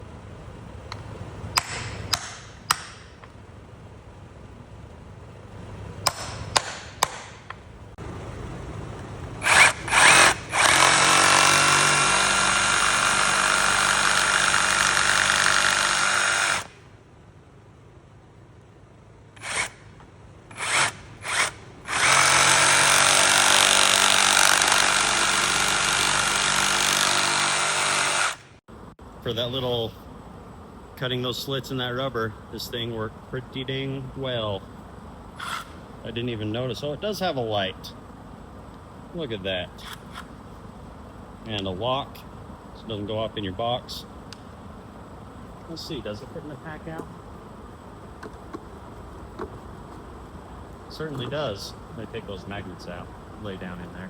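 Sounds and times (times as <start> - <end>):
jigsaw cutting rubber: 9.4 - 16.8, 19.4 - 19.8, 20.5 - 28.5.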